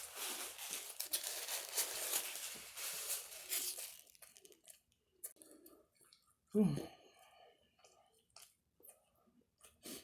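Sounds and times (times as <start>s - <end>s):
crinkly tearing and rustling: 0.0s - 5.4s.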